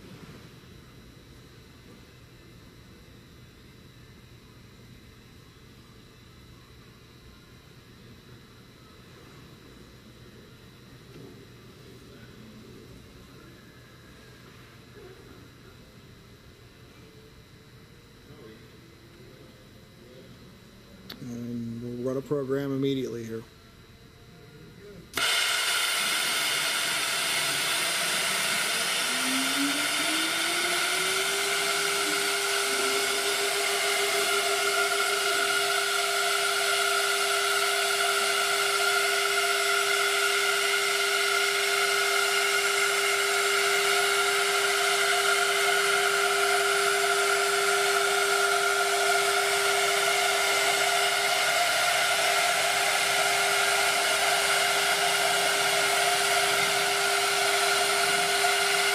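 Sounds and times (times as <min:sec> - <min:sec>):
cnc router spindle whine: 0:00.0 - 0:58.9.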